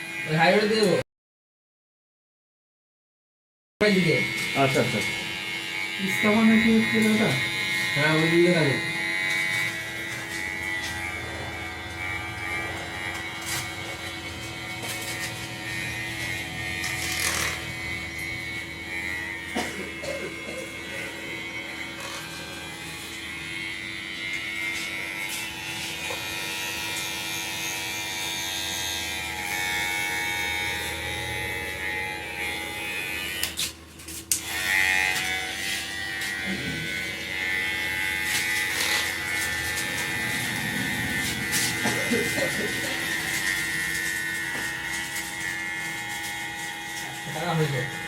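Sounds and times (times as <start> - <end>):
small motor buzzing: 3.9 - 48.0.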